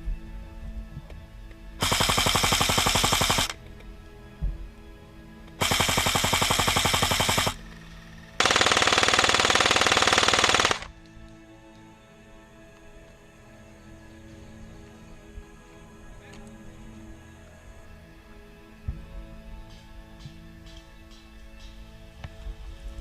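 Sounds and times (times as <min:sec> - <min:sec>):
airsoft gun firing rapid clicks: 0:01.8 - 0:03.6, 0:05.6 - 0:10.9.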